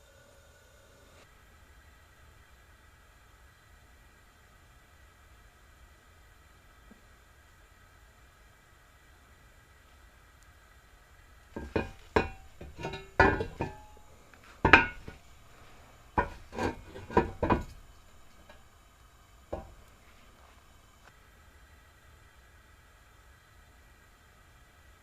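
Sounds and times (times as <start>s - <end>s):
metal and wood knocking: 11.6s - 14.0s, 14.6s - 15.2s, 16.2s - 18.6s, 19.5s - 19.8s.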